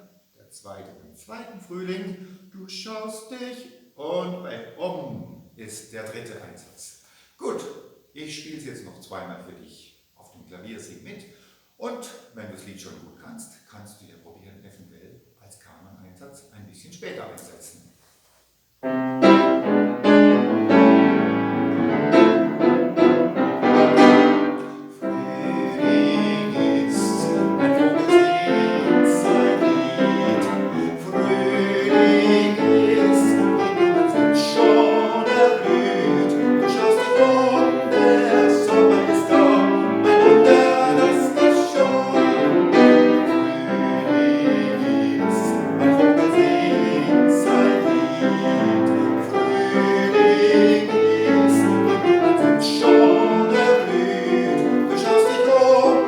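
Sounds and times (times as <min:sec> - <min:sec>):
piano playing simple melody: 0:18.8 - 0:56.0.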